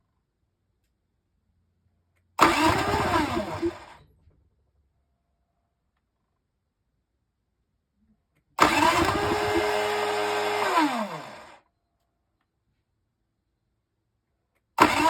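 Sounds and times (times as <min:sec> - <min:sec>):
generator starter cranking: 0:02.4 - 0:04.0, 0:08.6 - 0:11.6, 0:14.8 - 0:15.0.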